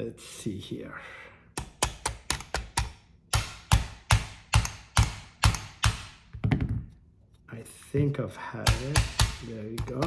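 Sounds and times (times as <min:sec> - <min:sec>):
mallet knocking: 0:08.7 - 0:10.0.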